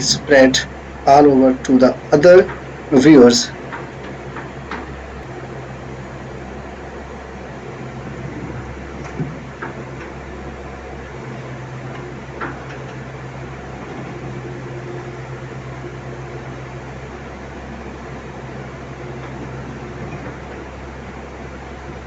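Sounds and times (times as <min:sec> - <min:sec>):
digging machine engine humming: 0:00.0 - 0:22.0.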